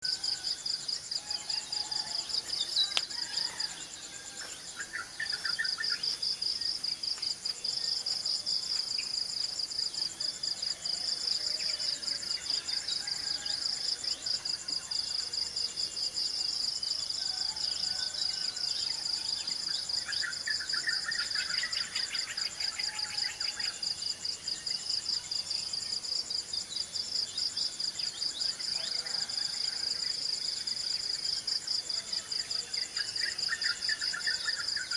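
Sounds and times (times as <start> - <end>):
insects trilling: 0.0 - 10.0.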